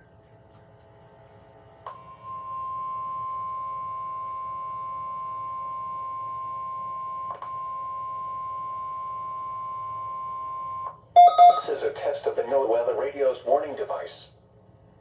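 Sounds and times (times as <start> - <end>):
high steady alarm tone: 11.2 - 11.8.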